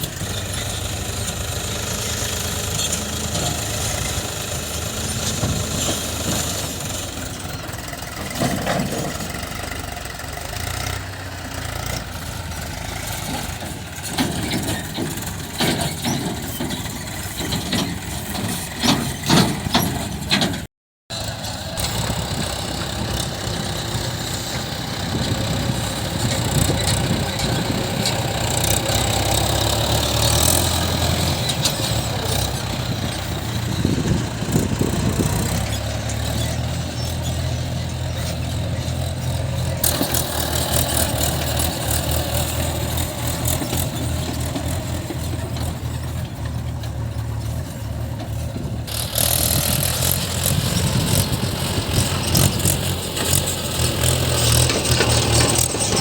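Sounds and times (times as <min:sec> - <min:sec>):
diesel engines running: 0:00.0 - 0:56.0
metal knocks and clanks: 0:13.2 - 0:20.7.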